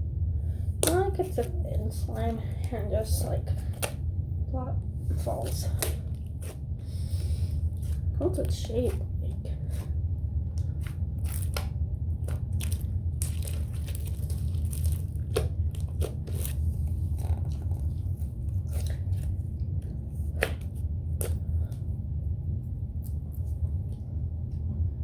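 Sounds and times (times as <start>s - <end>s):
steady low hum: 0.0s - 25.0s
slime squished by hand: 5.2s - 9.0s, 10.5s - 21.9s.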